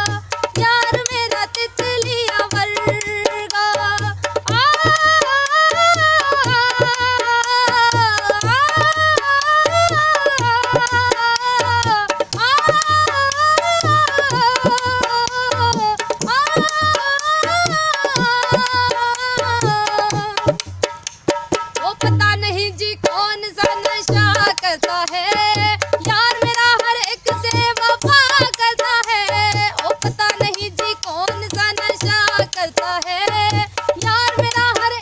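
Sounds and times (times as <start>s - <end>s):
hand-drum beat: 0.0s - 35.0s.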